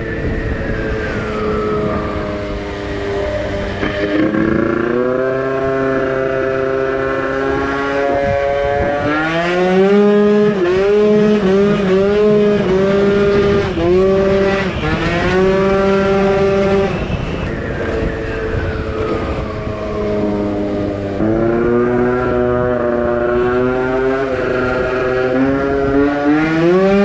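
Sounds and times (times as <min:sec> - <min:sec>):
scooter engine revving: 0:00.0 - 0:27.0.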